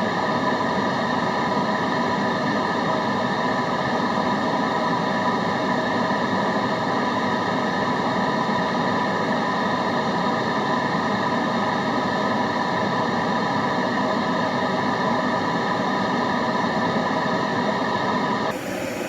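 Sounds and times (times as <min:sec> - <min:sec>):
steady white noise hiss: 0:18.5 - 0:19.0.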